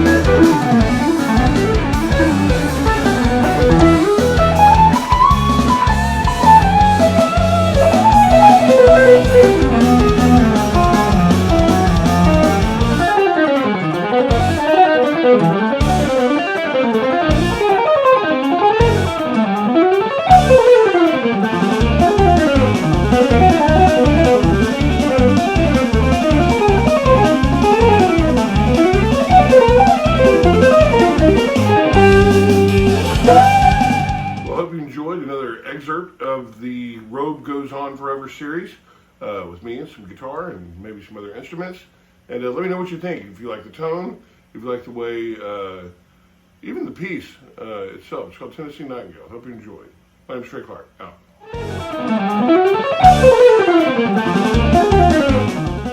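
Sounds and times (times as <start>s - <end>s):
electric guitar melody: 0.0s - 34.6s, 51.4s - 55.9s
low rhythmic backing: 0.0s - 34.6s, 51.5s - 55.9s.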